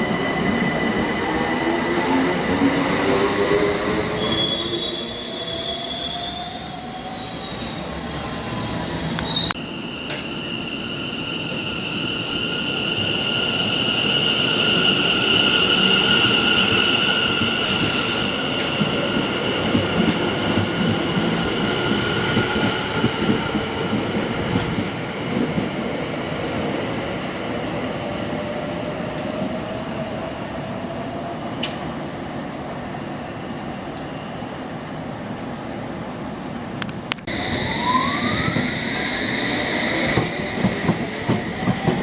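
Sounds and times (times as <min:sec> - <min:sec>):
train wheels squealing on rails: 0:00.0 - 0:25.9, 0:37.3 - 0:42.0
rumble of train wheels: 0:06.0 - 0:42.0.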